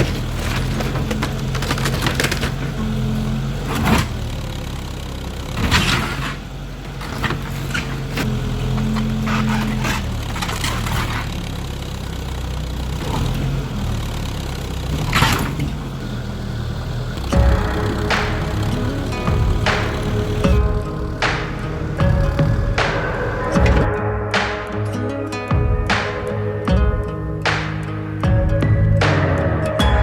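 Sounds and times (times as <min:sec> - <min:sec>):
wood framing cracking and splintering: 0:00.0 - 0:23.9
backhoe engine running: 0:00.0 - 0:24.4.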